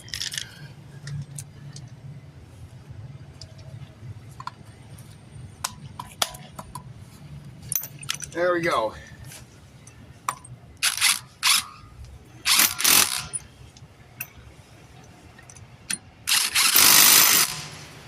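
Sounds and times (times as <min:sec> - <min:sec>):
impact wrench bursts: 0:10.8 - 0:11.8, 0:12.4 - 0:13.4, 0:16.3 - 0:18.0.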